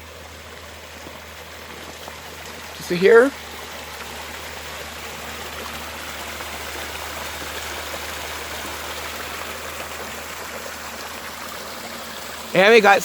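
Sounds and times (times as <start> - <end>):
waterfall rushing: 0.5 - 3.5.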